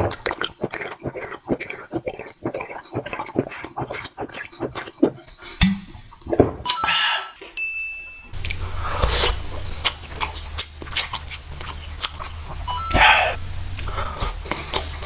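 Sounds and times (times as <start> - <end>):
noisy hum: 8.3 - 15.0
short high beep: 12.7 - 13.4.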